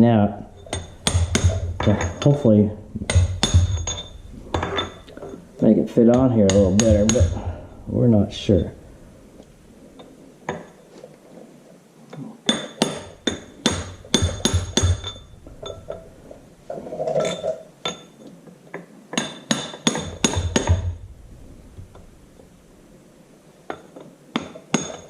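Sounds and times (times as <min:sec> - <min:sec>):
hammer tapping on sheet metal: 0:00.7 - 0:02.4, 0:03.0 - 0:04.8, 0:06.1 - 0:07.5, 0:12.5 - 0:15.2, 0:19.2 - 0:21.0.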